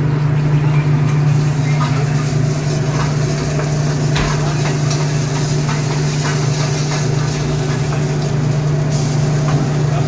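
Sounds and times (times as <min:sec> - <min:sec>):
kitchen equipment humming: 0:00.0 - 0:10.0.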